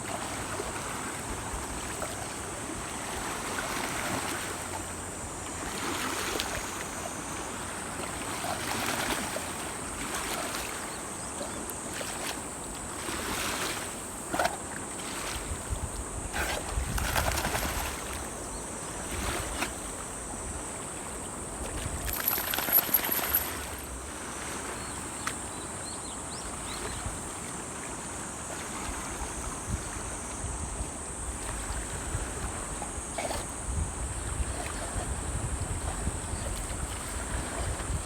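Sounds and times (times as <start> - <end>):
wind buffeting microphone: 15.4 - 18.1, 29.5 - 38.0
water rushing: 21.9 - 24.8.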